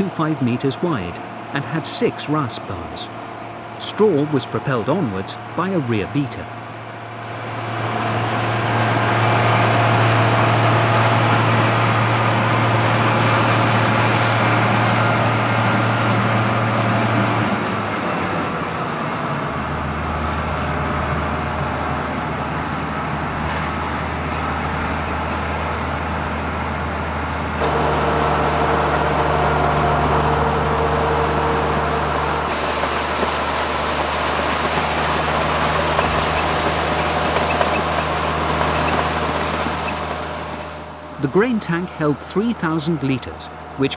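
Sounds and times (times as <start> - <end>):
combine harvester droning: 0.0 - 6.4, 27.4 - 43.9.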